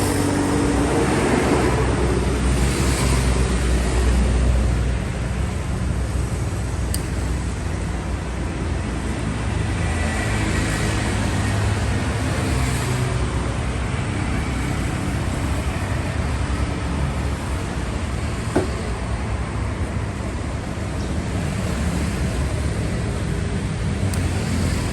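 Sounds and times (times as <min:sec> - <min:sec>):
sharp click: 0:06.9 - 0:07.4.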